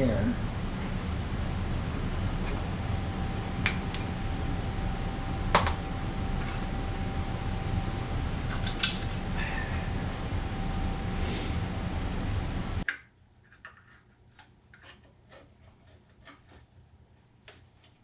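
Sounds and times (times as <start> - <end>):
steady low hum: 0.0 - 13.4.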